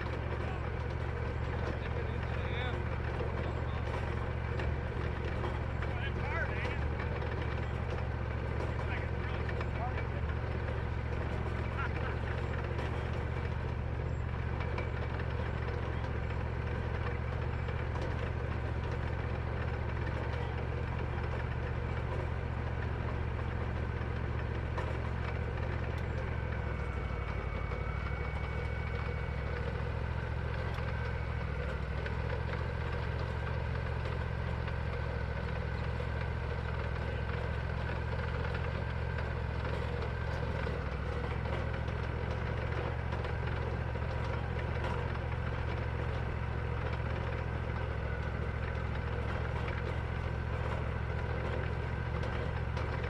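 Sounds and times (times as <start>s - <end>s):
band sawmill engine droning: 0.0s - 53.0s.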